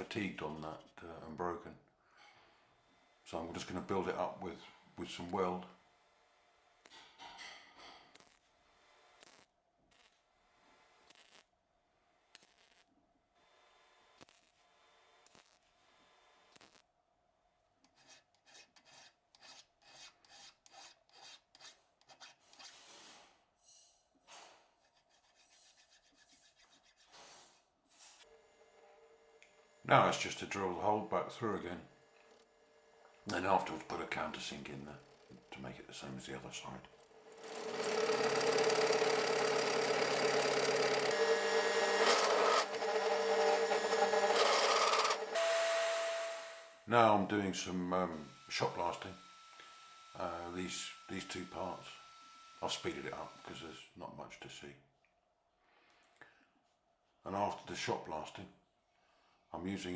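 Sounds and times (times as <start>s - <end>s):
hand file rasping on metal: 17.8s - 22.9s, 24.8s - 27.1s, 37.4s - 45.4s
power drill drilling metal: 37.0s - 46.8s, 48.1s - 53.6s.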